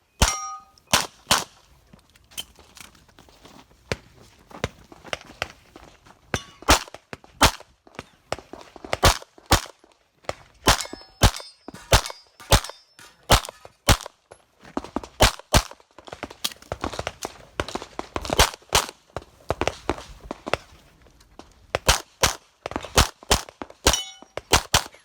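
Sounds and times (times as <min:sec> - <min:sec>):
metallic ring of steel targets: 0:00.2 - 0:00.9, 0:10.7 - 0:13.9, 0:23.9 - 0:25.0
pistol shots: 0:00.2 - 0:01.5, 0:09.0 - 0:09.7, 0:10.6 - 0:14.1, 0:21.8 - 0:25.0.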